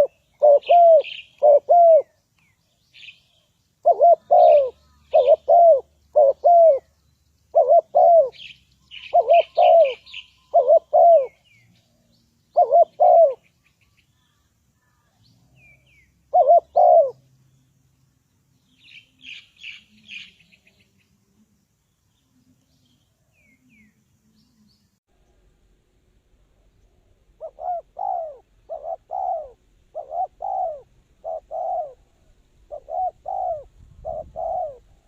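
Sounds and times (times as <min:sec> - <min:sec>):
dove cooing: 0:00.0 - 0:02.2, 0:03.8 - 0:06.9, 0:07.5 - 0:11.7, 0:12.5 - 0:13.5, 0:15.6 - 0:17.3, 0:27.3 - 0:35.0
small birds chirping: 0:00.0 - 0:25.6, 0:26.4 - 0:35.0.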